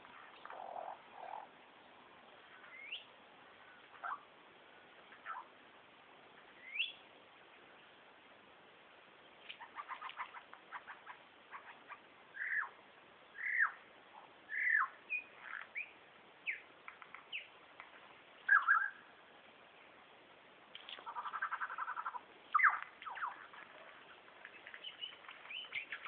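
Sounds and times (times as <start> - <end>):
lyrebird singing mimicked calls: 2.5 - 3.1, 9.5 - 12.8, 13.4 - 13.8, 14.5 - 17.5, 18.5 - 19.0, 21.0 - 26.0.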